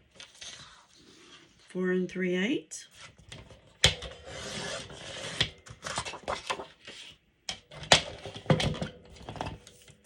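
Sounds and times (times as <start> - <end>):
cardstock rustling and scraping: 2.9 - 7.2.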